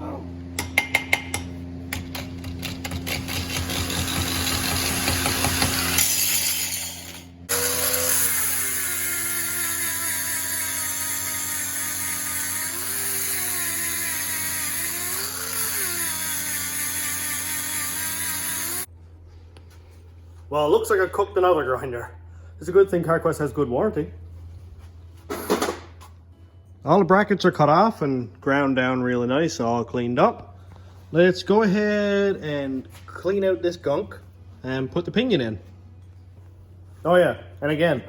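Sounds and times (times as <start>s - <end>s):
angle grinder grinding steel: 2.5s - 18.9s.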